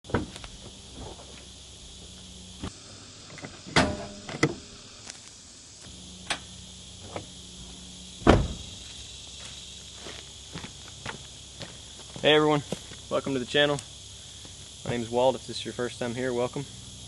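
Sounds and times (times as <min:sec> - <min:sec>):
high insect chirr: 0:00.1 - 0:17.0
sharp knocks and clunks: 0:03.7 - 0:04.6, 0:08.2 - 0:08.7.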